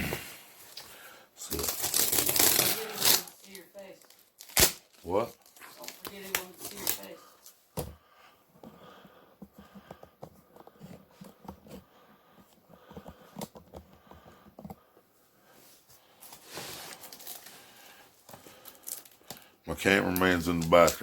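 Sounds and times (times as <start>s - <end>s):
cardboard tearing: 1.5s - 3.5s, 4.4s - 7.1s
cardboard package handling: 1.5s - 7.5s.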